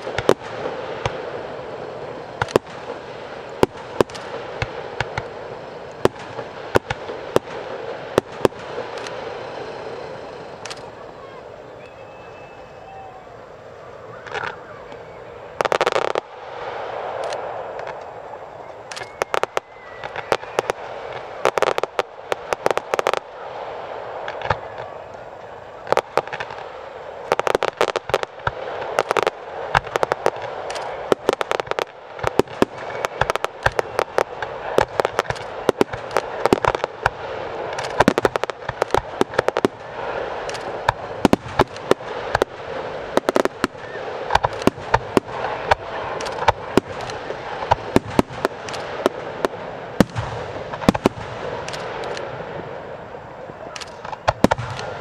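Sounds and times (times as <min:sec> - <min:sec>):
fireworks bangs and crackling: 0:00.0 - 0:55.0
fireworks hissing: 0:00.0 - 0:55.0.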